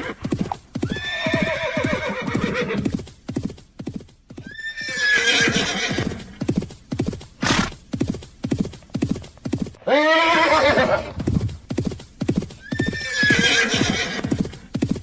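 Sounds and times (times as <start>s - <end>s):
horse neighing: 0.0s - 2.9s, 4.4s - 6.3s, 9.8s - 11.2s, 12.6s - 14.4s
horse hoofbeats galloping: 0.0s - 15.0s.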